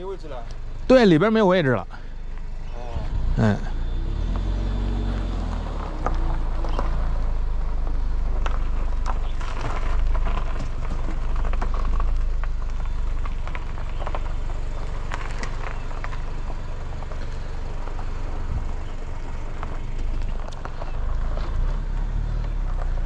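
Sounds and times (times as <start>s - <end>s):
car engine and road rumble: 0.0s - 23.0s
small clicks and ticks: 7.8s - 18.1s, 18.7s - 23.0s.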